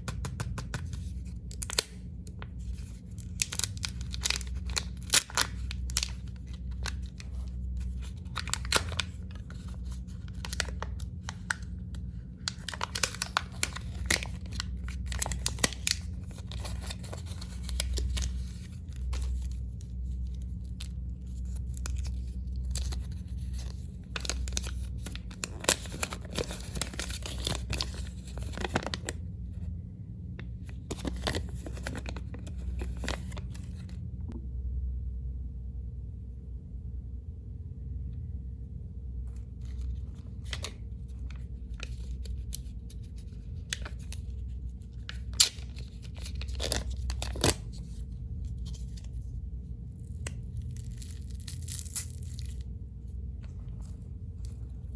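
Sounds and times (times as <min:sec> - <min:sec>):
candy wrappers crinkling: 0:00.0 - 0:29.2, 0:30.6 - 0:33.9, 0:39.6 - 0:49.2, 0:50.0 - 0:52.8
steady low hum: 0:00.0 - 0:54.9.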